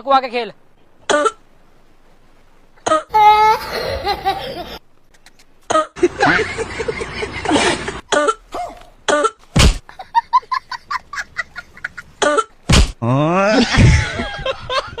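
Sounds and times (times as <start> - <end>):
person coughing: 7.5 - 9.4.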